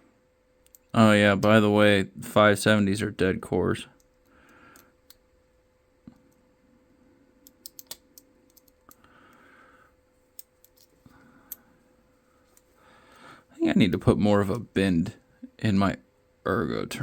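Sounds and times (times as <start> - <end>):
lock pick clicking in padlock: 7.5 - 8.8.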